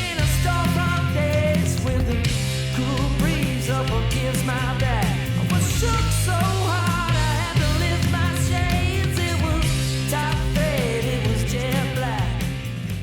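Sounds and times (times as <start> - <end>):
drums: 0.0 - 13.0
electric guitars: 0.0 - 13.0.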